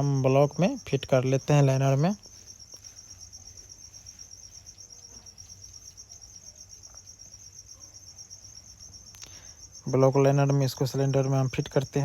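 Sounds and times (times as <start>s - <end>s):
cricket trilling: 0.0s - 12.0s
faint clicks: 9.1s - 9.4s.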